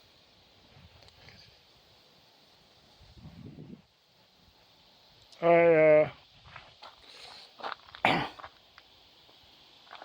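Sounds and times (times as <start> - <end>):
person coughing: 8.0 - 8.4.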